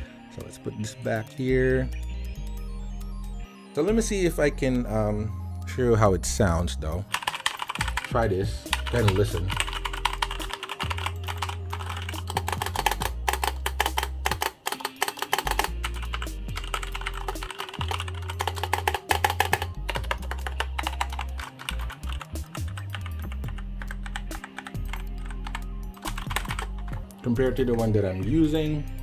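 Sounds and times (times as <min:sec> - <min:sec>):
background music with bass: 0:00.0 - 0:29.0
typing on mechanical keyboard: 0:07.1 - 0:27.2.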